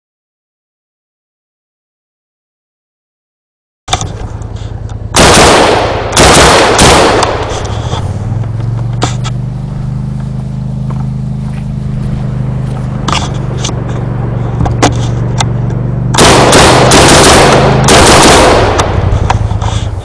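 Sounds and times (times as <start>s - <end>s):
machine-gun bursts: 5.2s - 7.8s, 16.2s - 19.1s
single gunshots: 5.2s - 7.9s, 16.2s - 19.1s.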